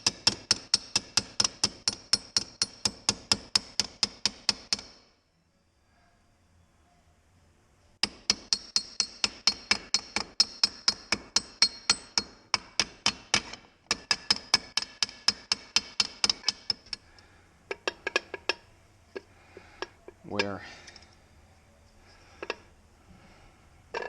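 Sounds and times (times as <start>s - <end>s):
hammer striking metal: 8.0s - 16.8s.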